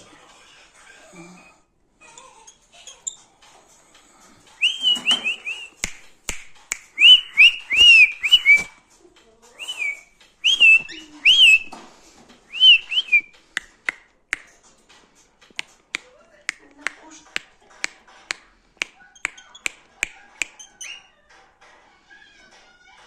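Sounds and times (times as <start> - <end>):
short whistled notes: 4.6 - 6.0, 7.0 - 8.7, 9.6 - 11.8, 12.5 - 13.3
sharp snaps: 4.6 - 8.8, 12.5 - 14.8, 15.4 - 21.0.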